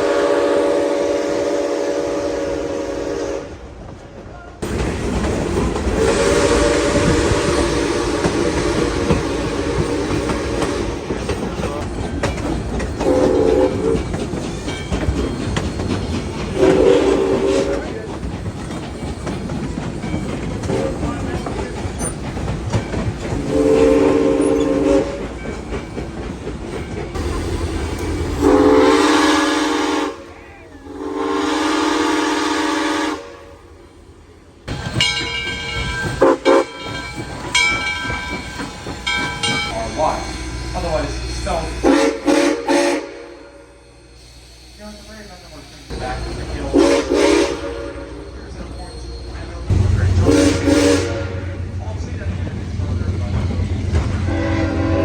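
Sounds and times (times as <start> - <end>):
steam whistle blasts: 0.0 - 3.6, 6.0 - 11.0, 13.0 - 14.0, 16.6 - 17.8, 23.4 - 25.2, 28.0 - 33.6, 36.2 - 36.8, 41.6 - 49.2, 50.2 - 51.6, 54.2 - 55.0
moving train rumble: 0.0 - 55.0.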